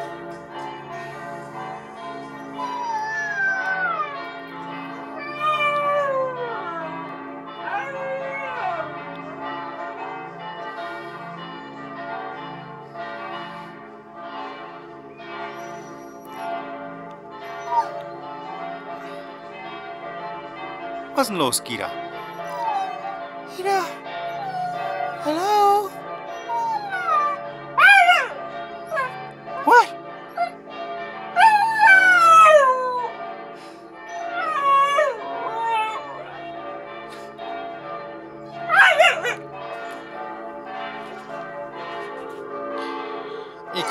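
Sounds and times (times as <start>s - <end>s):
church bells pealing: 0.0s - 43.9s
dog howling: 2.5s - 4.2s, 5.2s - 7.0s, 7.6s - 8.9s, 17.6s - 18.0s, 22.4s - 30.6s, 31.4s - 33.1s, 34.2s - 36.4s, 38.7s - 39.4s.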